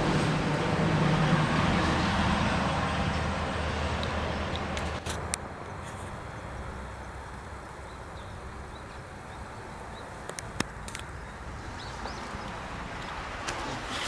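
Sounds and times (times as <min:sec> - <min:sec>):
sharp clicks: 0:10.2 - 0:11.1.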